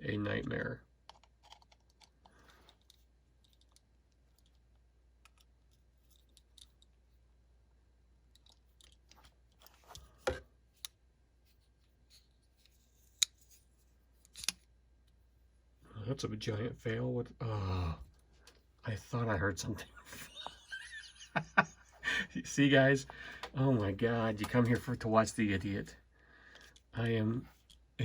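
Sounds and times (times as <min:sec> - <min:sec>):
small metal clicks of knife parts: 0:14.2 - 0:14.6.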